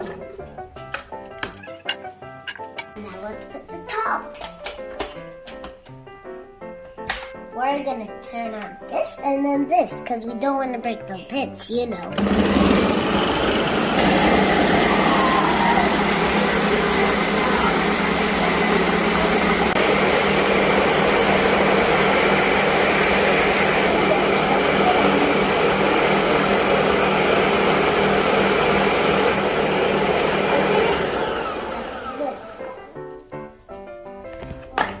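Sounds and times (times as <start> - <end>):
blender motor whirring: 12.2 - 32.8.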